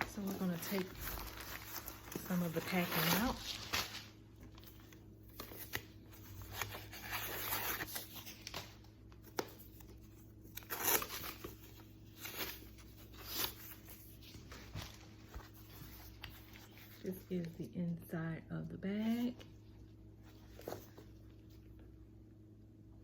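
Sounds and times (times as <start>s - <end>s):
packing stuffing rustling: 0.0s - 4.9s.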